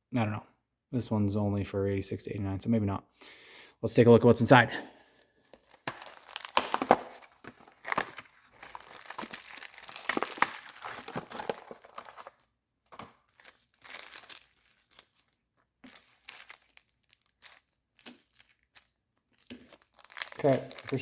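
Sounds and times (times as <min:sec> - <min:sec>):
plastic packaging crinkling: 0:05.1 - 0:21.0.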